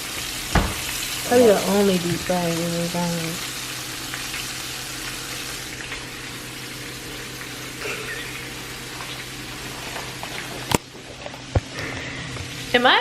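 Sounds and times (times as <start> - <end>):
hot oil bubbling: 0.0 - 13.0.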